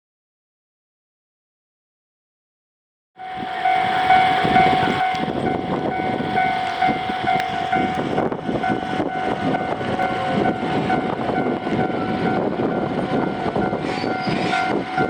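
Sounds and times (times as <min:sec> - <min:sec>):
steady ringing tone: 0:03.2 - 0:15.0
train rumbling over crossing: 0:03.2 - 0:15.0.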